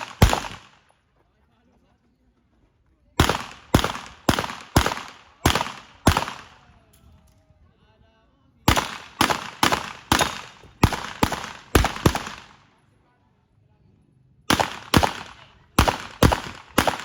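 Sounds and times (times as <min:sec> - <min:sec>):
rapid gunshots: 0:00.0 - 0:00.8, 0:03.2 - 0:06.6, 0:08.7 - 0:12.6, 0:14.5 - 0:17.0.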